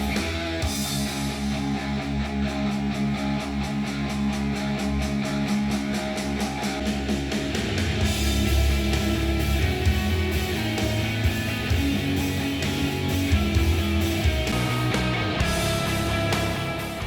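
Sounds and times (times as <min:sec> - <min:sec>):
guitar music from a speaker: 0:00.0 - 0:17.0.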